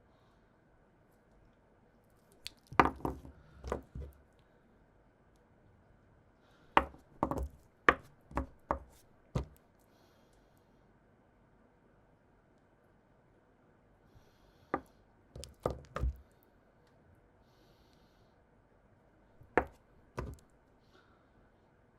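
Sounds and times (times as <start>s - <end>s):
items knocking on hard surface: 2.7s - 4.2s, 6.8s - 9.6s, 14.8s - 16.2s, 19.4s - 20.4s.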